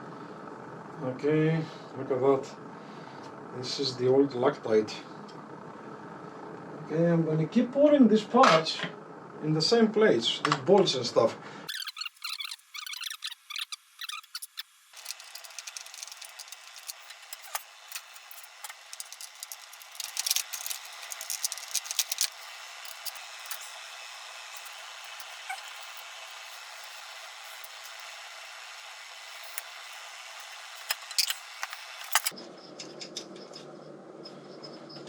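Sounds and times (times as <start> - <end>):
metal parts and tools clinking: 11.7 - 33.6.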